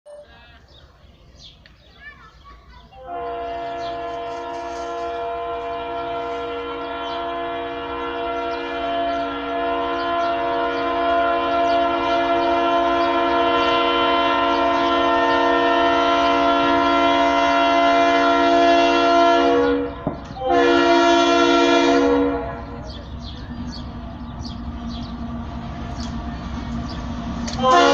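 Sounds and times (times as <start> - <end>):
locomotive air horn: 3.0 - 23.0, 27.4 - 27.9.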